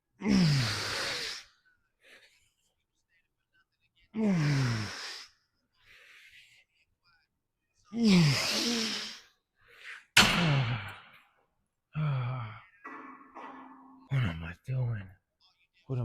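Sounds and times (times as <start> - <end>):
faint breath: 4.8 - 6.7
man sighing heavily: 12.0 - 12.7.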